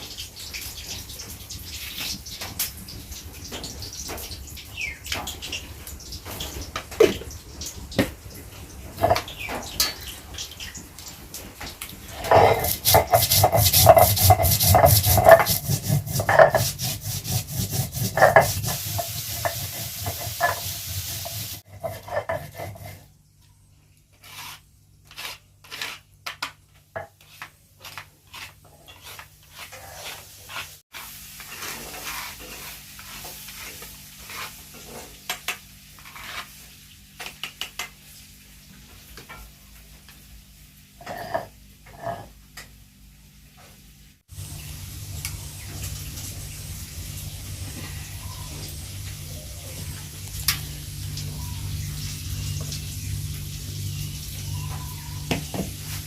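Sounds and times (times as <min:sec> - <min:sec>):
utensils scraping and knocking pots: 0:12.0 - 0:23.1, 0:41.0 - 0:42.4.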